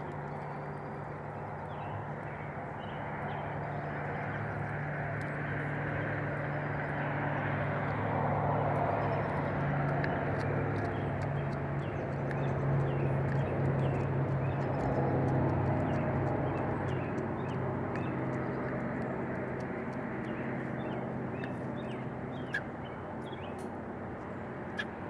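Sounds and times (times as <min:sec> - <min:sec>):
steady low hum: 0:00.0 - 0:25.0
hens pecking at feed: 0:08.7 - 0:21.9.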